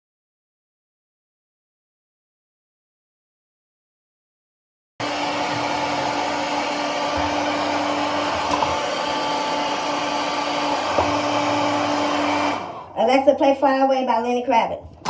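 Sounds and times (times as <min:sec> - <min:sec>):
hair dryer blowing: 0:05.0 - 0:13.0.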